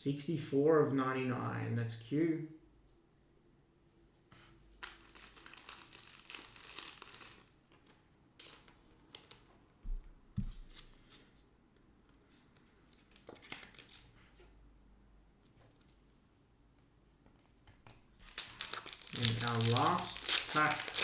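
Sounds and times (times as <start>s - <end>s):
thin plastic crinkling: 4.8s - 9.6s, 12.9s - 14.2s, 18.2s - 21.0s.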